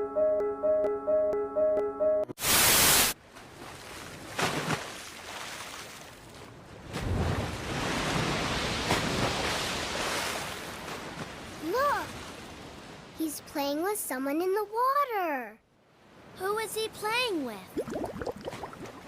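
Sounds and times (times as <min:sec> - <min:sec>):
cartoon ocean surf splashing: 0:07.0 - 0:15.4.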